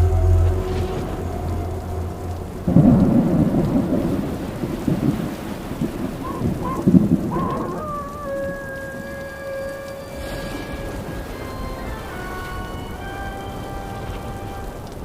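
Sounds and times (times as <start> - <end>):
music tones: 0.0 - 3.8, 7.8 - 15.0
rain: 0.0 - 15.0
thunder clap and rumble: 0.0 - 15.0.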